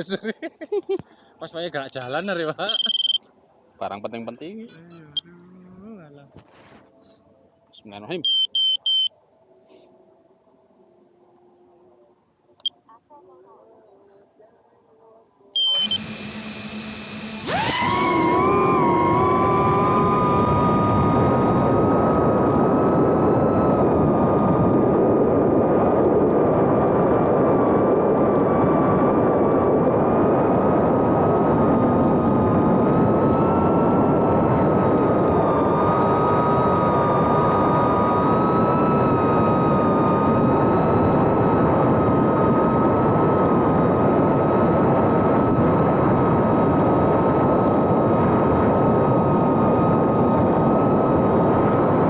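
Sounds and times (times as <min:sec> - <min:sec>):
drone motors whining: 0:15.6 - 0:21.5.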